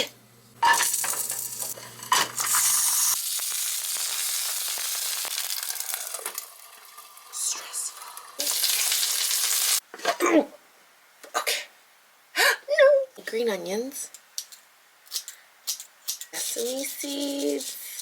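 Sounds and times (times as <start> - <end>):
buns sizzling in hot oil: 0.6 - 9.8.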